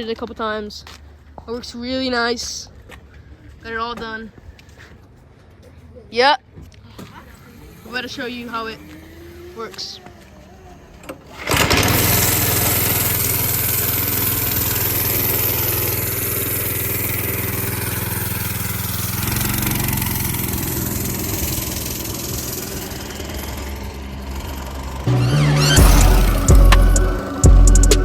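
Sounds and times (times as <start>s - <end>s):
go-kart engine running: 6.7s - 28.0s
loud low sound: 25.1s - 28.0s.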